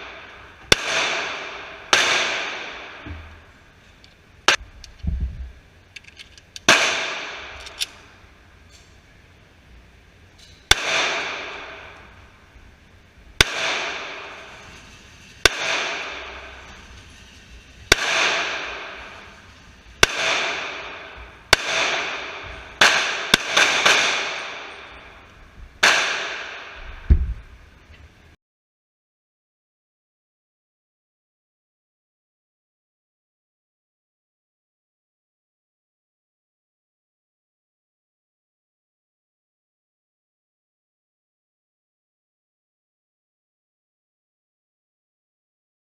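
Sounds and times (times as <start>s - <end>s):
pistol shots echoing indoors: 0.0s - 3.2s, 6.6s - 8.1s, 10.6s - 12.4s, 13.4s - 26.9s.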